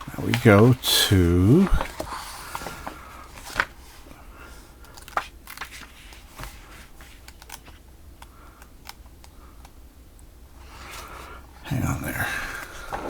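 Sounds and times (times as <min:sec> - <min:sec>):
paper crinkling and rustling: 0:00.0 - 0:07.8.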